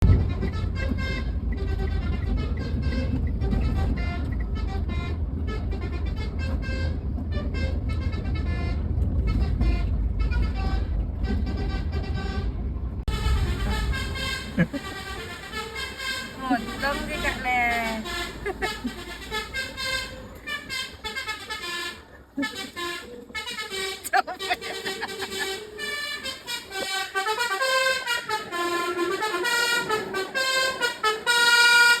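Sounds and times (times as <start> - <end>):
steady low rumble: 0.0 - 22.8
multi-tone air horn melody: 0.0 - 32.0.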